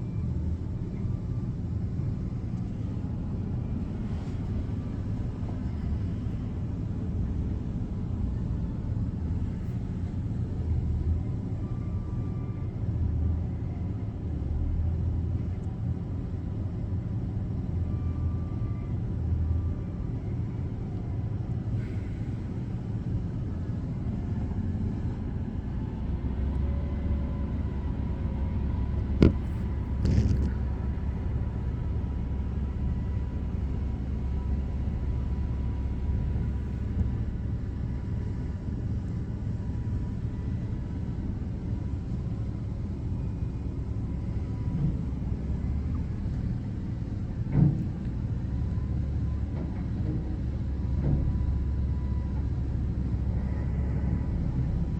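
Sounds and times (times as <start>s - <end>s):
garbage truck engine rumble: 18.3s - 54.9s
small knock: 29.2s - 30.6s.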